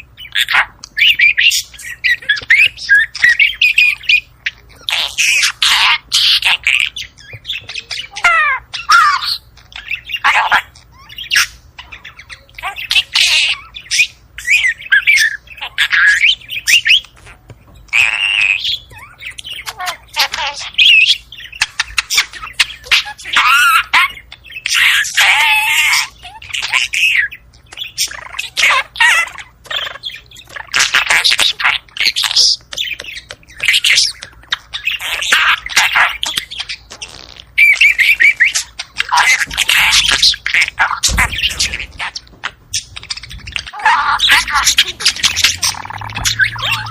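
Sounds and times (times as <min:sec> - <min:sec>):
budgerigars chirping: 0:00.0 - 0:46.9
harsh buzzy squawk: 0:12.2 - 0:46.9.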